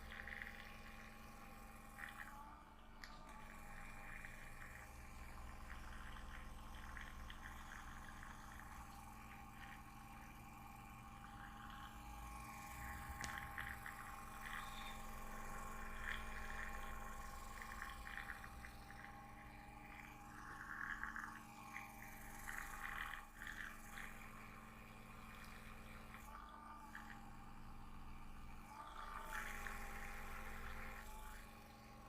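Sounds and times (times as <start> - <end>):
background hum: 0.0 - 32.0.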